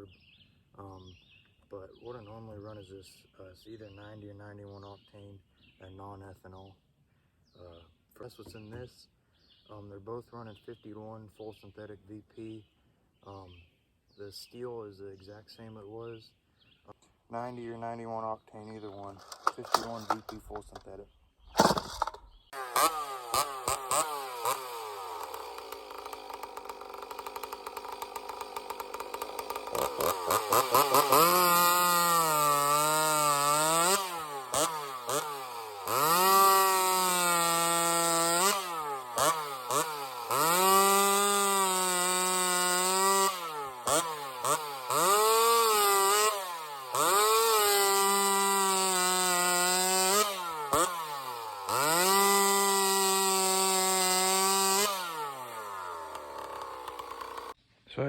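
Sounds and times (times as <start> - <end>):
chainsaw cutting wood: 18.7 - 57.6
chainsaw idling: 18.8 - 21.0, 21.6 - 57.6.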